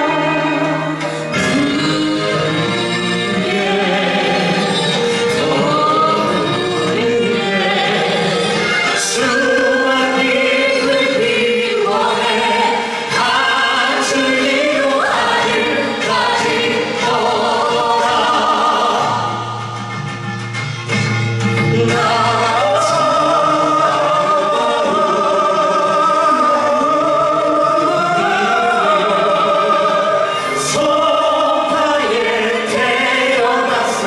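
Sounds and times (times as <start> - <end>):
group singing: 0.0 - 20.2, 20.9 - 34.0
musical accompaniment: 0.0 - 34.0.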